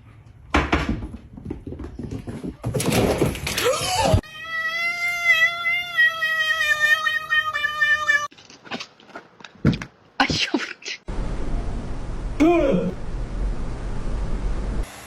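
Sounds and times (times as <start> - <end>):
cat meowing long: 4.2 - 8.3
brief cry: 12.4 - 13.0.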